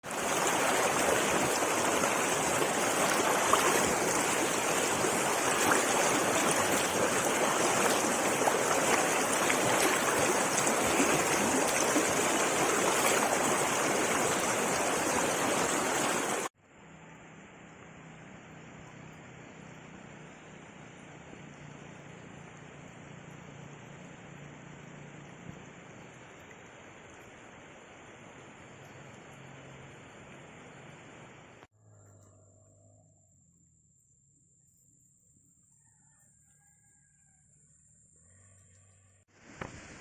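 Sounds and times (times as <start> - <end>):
stream water running: 0.0 - 16.6, 21.4 - 31.7.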